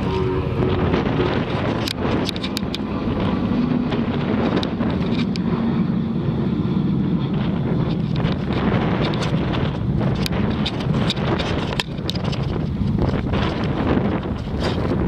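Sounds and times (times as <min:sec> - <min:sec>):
jet engines droning: 0:00.0 - 0:15.0
wind buffeting microphone: 0:00.0 - 0:15.0.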